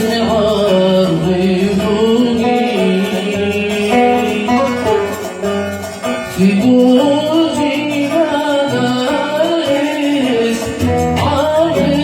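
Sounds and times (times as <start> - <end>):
oud melody: 0.0 - 12.0.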